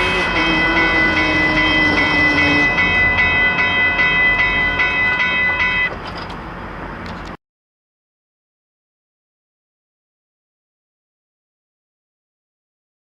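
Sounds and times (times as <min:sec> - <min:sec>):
level crossing warning bell: 0:00.0 - 0:06.1
passing train rumble: 0:00.0 - 0:07.4.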